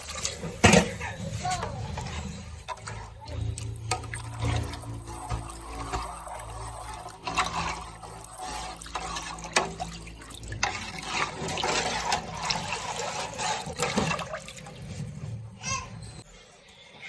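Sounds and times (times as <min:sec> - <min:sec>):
water splashing and trickling: 0:00.0 - 0:16.3.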